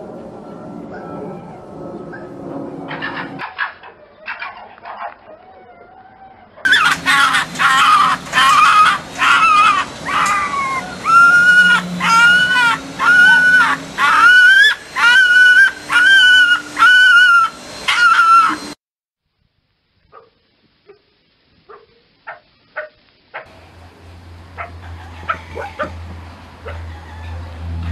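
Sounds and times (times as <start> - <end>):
fox barking: 2.1 - 5.5, 6.6 - 18.6, 20.1 - 23.5, 24.5 - 26.0.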